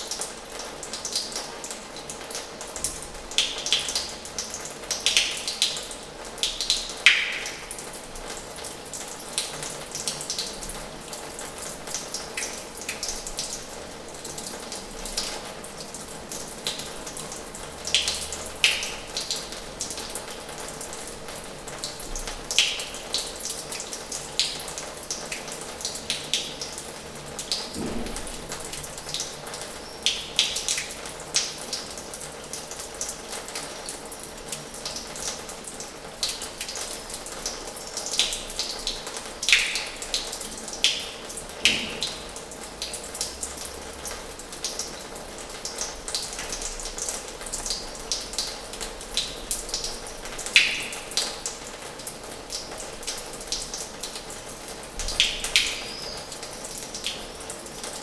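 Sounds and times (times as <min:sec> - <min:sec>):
water splashes and drops: 0:02.7 - 0:08.2, 0:26.6 - 0:31.6, 0:39.3 - 0:43.5, 0:48.9 - 0:53.7, 0:54.8 - 0:57.4.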